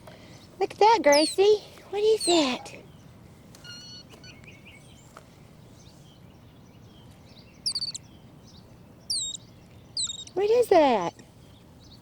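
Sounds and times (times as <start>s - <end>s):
faint outdoor background noise: 0.0s - 12.0s
high falling chirps: 7.6s - 8.0s, 9.1s - 9.4s, 10.0s - 10.4s.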